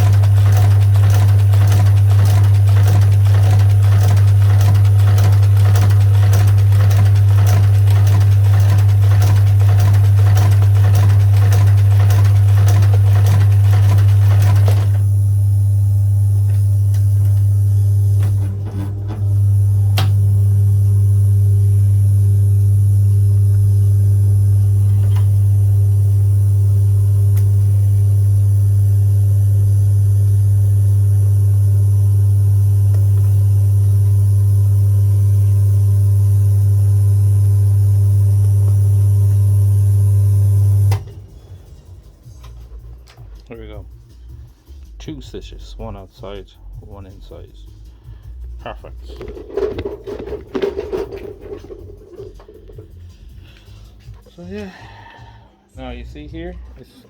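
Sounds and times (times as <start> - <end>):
stitching machine clatter: 0.0 - 15.1, 49.2 - 52.7
motor hum: 0.0 - 41.4.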